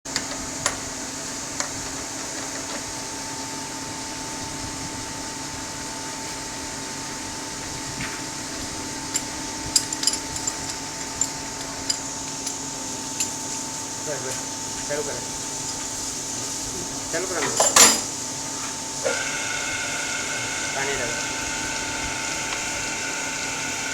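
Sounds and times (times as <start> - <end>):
workshop machine humming: 0.1 - 23.9.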